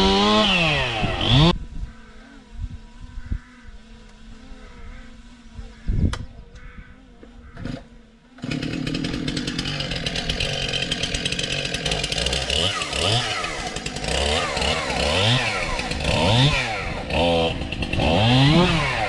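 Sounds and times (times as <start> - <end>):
chainsaw revving: 0.0 - 1.6, 7.6 - 19.0.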